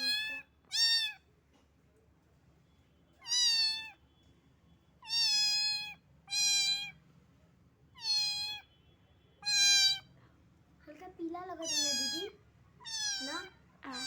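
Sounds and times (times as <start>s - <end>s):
kitten meowing: 0.0s - 1.2s, 3.2s - 4.0s, 5.0s - 7.0s, 8.0s - 8.7s, 9.4s - 10.1s, 11.6s - 14.0s.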